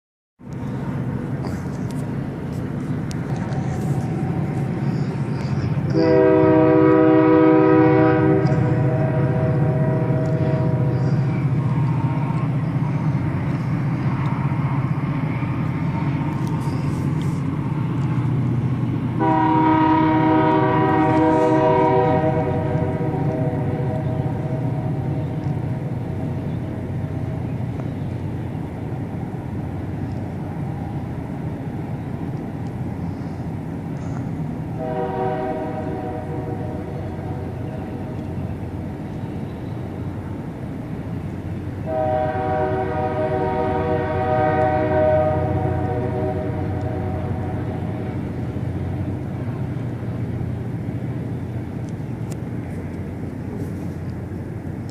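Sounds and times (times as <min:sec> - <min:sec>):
steady low rumble: 0:00.4 - 0:06.4
horn-like droning tone: 0:03.6 - 0:11.3, 0:19.2 - 0:25.1, 0:34.8 - 0:37.6, 0:41.8 - 0:48.2.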